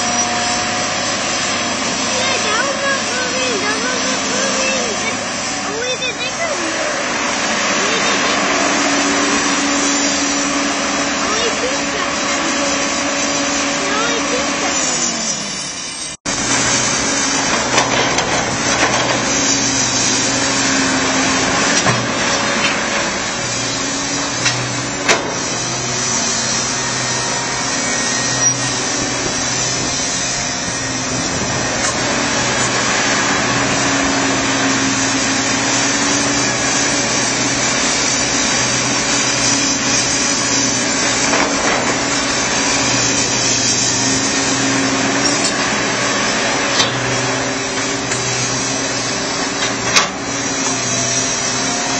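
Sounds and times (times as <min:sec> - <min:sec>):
diesel engine working under load: 0:00.0 - 0:51.9.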